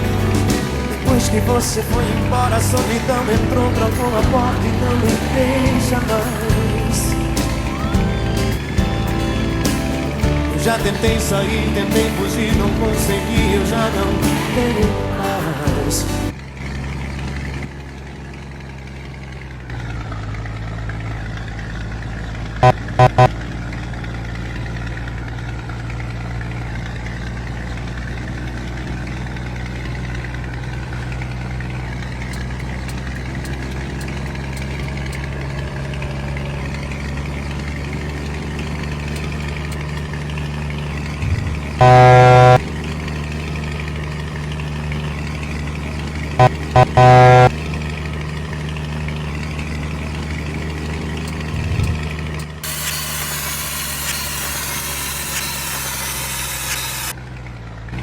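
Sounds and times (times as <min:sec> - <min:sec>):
truck engine rumbling: 0:00.0 - 0:58.0
truck air horn blasts: 0:22.6 - 0:23.3, 0:41.8 - 0:42.7, 0:46.4 - 0:47.6.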